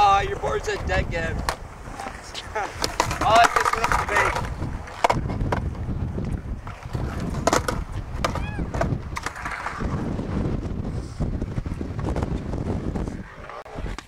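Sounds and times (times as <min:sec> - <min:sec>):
skateboard wheels rolling on concrete: 0:00.0 - 0:14.0
wind on microphone: 0:00.0 - 0:14.0
skateboard clacks: 0:00.4 - 0:10.0.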